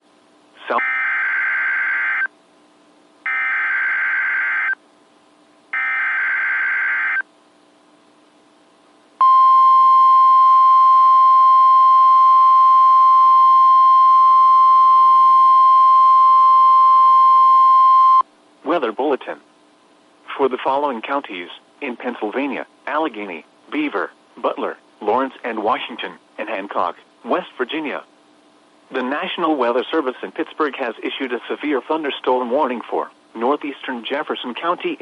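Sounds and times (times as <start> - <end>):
steady warning alarm tone: 0.6 - 2.3, 3.3 - 4.8, 5.8 - 7.2
data tone bursts: 3.3 - 4.8, 5.8 - 7.2.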